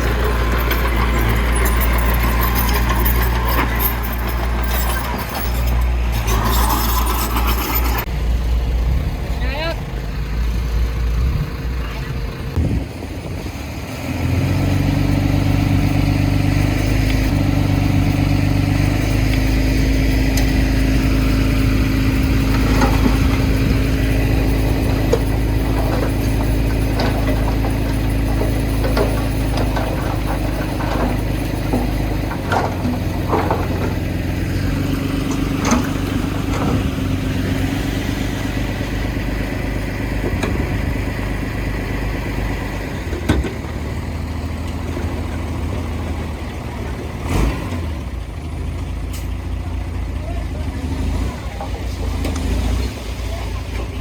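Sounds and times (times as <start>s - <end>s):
metallic clanks and knocks: 0.0s - 8.1s, 22.2s - 37.0s
diesel engine running: 0.0s - 54.0s.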